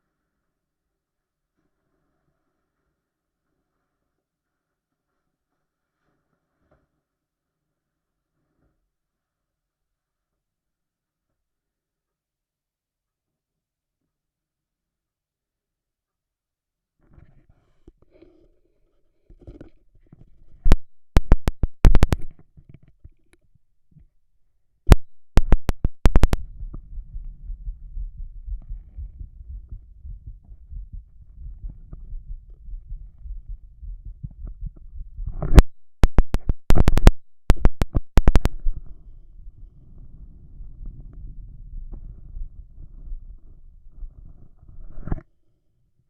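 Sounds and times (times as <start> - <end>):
faint heartbeat thumps: 24.9 - 39.8
muffled low rumble: 24.9 - 44.7
faint muffled body sounds: 25.0 - 37.0.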